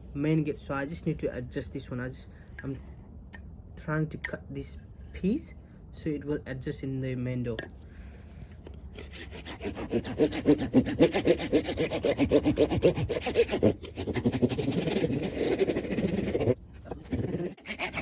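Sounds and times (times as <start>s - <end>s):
hand saw cutting: 9.0s - 18.0s.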